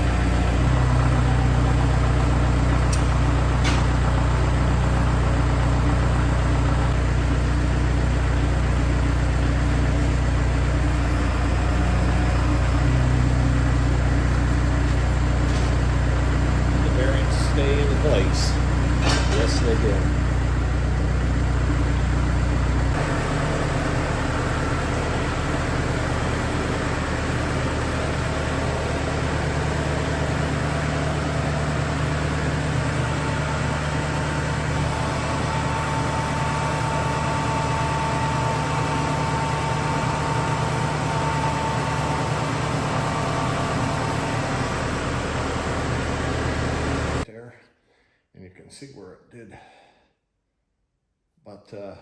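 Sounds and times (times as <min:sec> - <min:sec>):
tractor engine idling: 0:00.0 - 0:47.2.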